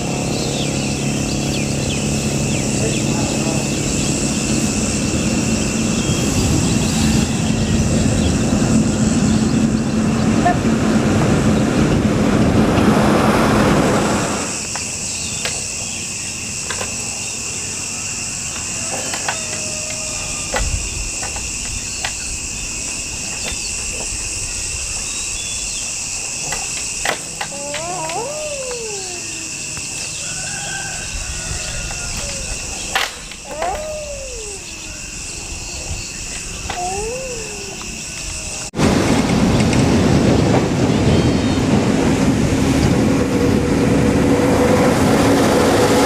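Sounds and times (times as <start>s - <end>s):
high insect drone: 0.0s - 45.8s.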